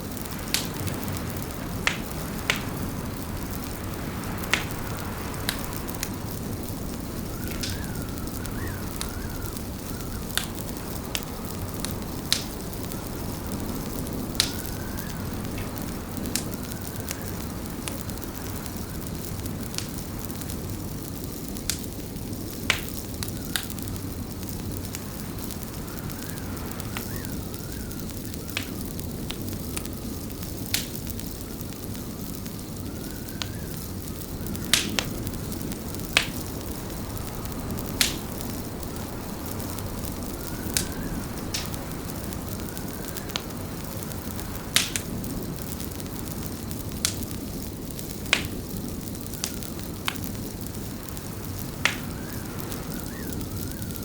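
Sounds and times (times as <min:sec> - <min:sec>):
fire crackling and popping: 0:00.0 - 0:54.0
low rumble of flame: 0:00.0 - 0:54.0
faint wavering whistle: 0:39.6 - 0:43.3.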